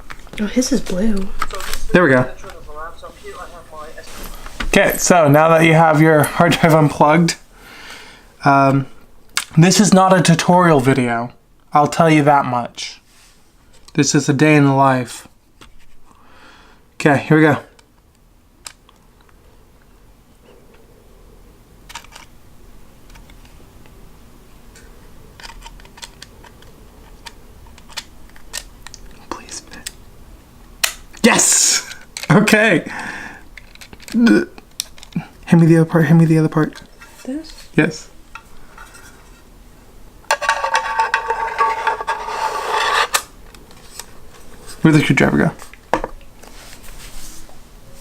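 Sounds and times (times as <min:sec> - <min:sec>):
rasping scrape of hard parts: 0:40.4 - 0:43.3.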